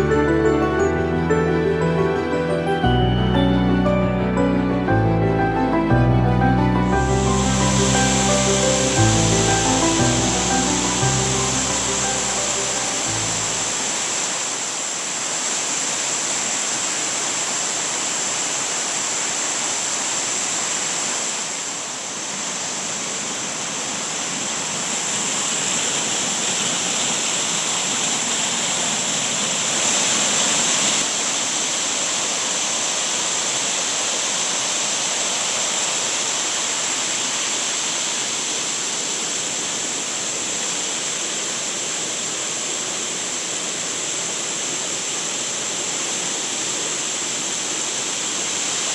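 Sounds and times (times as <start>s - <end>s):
waterfall pouring: 6.9s - 17.2s.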